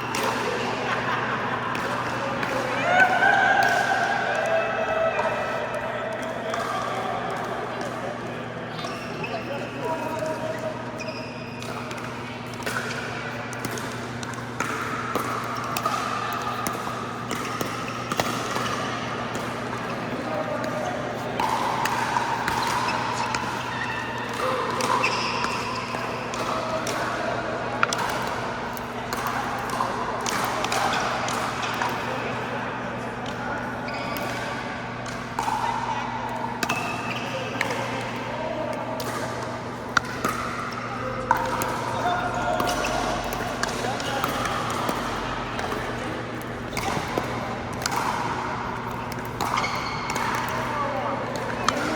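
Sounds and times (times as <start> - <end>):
ball bouncing on court: 11.0 - 27.1, 33.9 - 35.8, 36.6 - 51.9
ball bouncing: 39.8 - 51.9.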